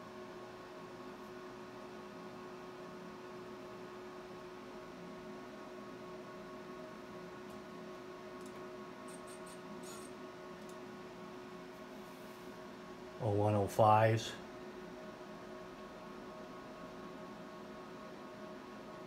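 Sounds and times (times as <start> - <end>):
electrical hum: 0.0 - 19.0.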